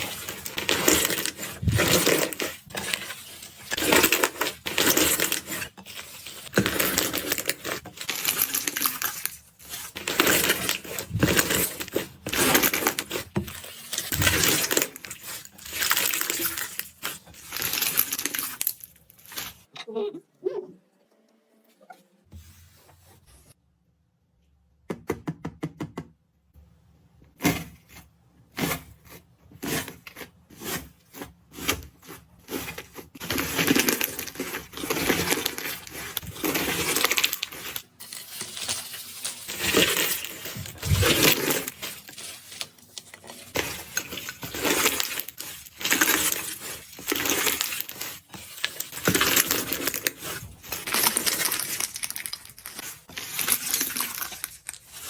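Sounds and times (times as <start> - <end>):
dried slime crust crackling: 39.4 - 55.0.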